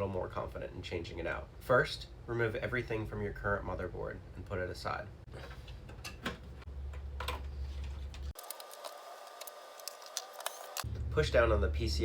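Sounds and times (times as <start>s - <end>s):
computer parts clicking and tapping: 5.9s - 10.8s.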